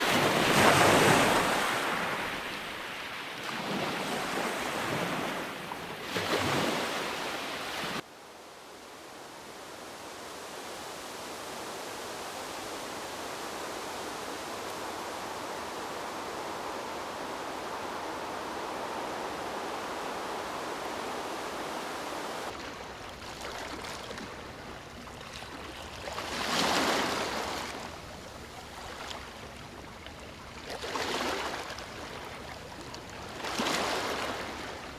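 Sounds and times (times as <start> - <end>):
ocean waves washing in: 0.0 - 28.0
steady rushing hiss: 7.5 - 22.5.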